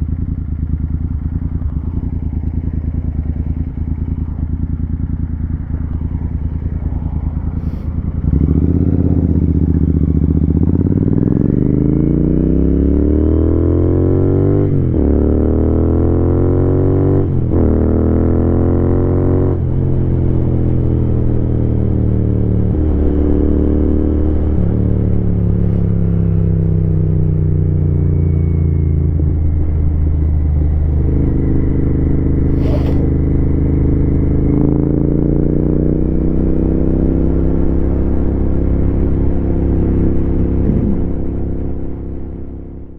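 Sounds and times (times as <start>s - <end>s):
motorcycle engine upshifting: 25.0s - 26.3s, 31.1s - 33.4s, 39.7s - 41.8s.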